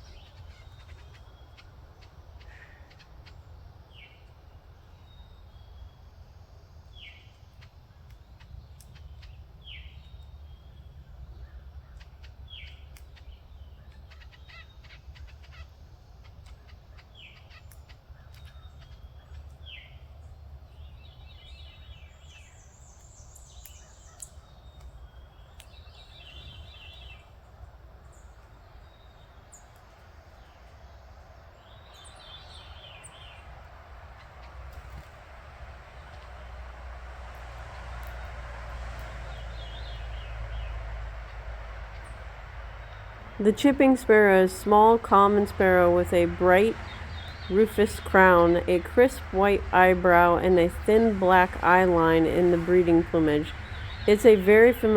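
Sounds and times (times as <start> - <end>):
harsh raspy bird calls: 11.9 - 19.4
birds calling downward-slurred notes: 38.0 - 54.9.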